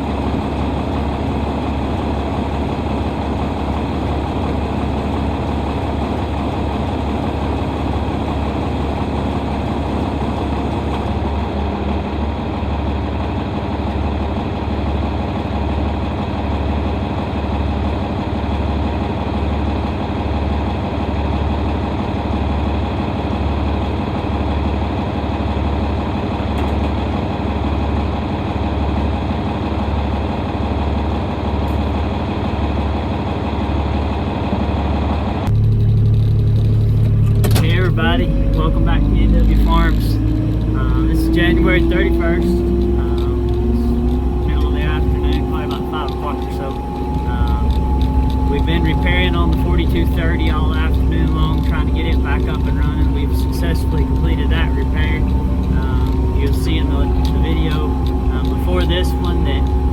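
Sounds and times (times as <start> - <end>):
diesel engine running: 0.0 - 59.9.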